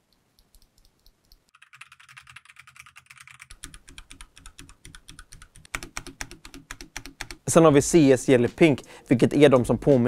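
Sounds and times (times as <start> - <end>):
mechanical keyboard typing: 0.4 - 7.5.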